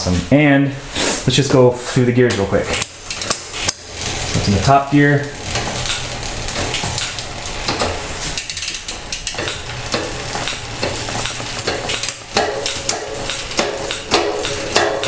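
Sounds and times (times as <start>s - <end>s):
bike chain rattling over cassette: 8.4s - 15.0s.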